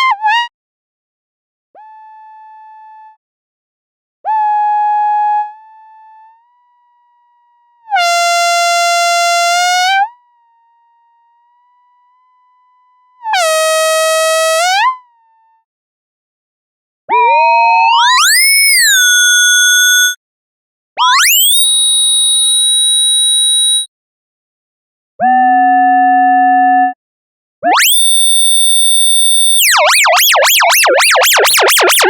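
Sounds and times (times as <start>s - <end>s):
held electronic tones: 23.1s - 23.9s, 27.7s - 32.0s.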